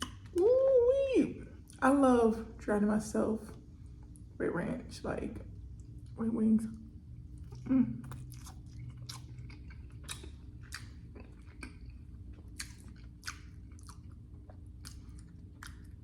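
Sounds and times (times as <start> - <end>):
chewing and mouth smacks: 5.4 - 16.0.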